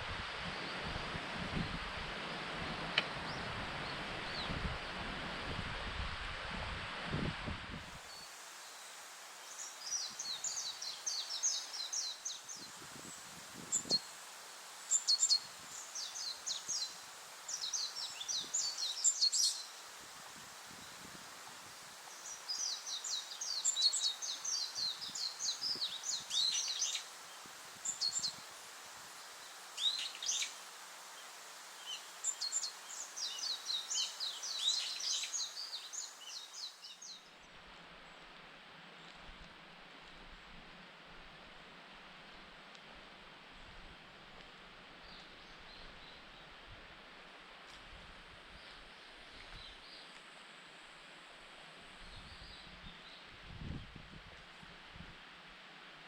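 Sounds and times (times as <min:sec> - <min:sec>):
faint outdoor hiss: 0:00.0 - 0:56.0
songbird singing: 0:00.5 - 0:05.0, 0:08.0 - 0:14.1, 0:14.8 - 0:20.0, 0:21.8 - 0:38.3, 0:45.0 - 0:46.7, 0:48.5 - 0:50.3, 0:52.0 - 0:54.0.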